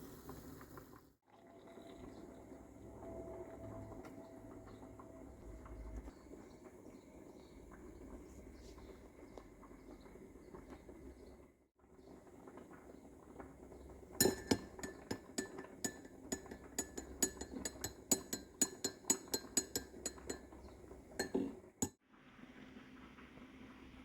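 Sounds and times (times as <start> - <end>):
spoon clinking against glass cup: 14.2 - 22.0.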